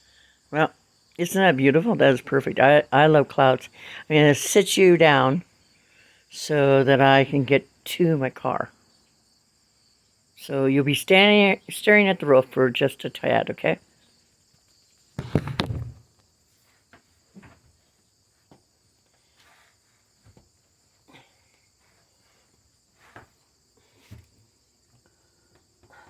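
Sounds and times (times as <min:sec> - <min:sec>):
crickets chirring: 0:00.0 - 0:26.0
soft knocks and shuffling steps: 0:14.5 - 0:26.0
handling thump: 0:15.2 - 0:16.0.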